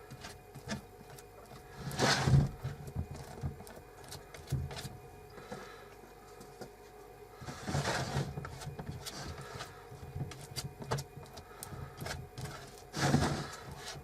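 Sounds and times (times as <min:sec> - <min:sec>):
scraping rustle: 0:01.5 - 0:05.0, 0:07.4 - 0:14.0.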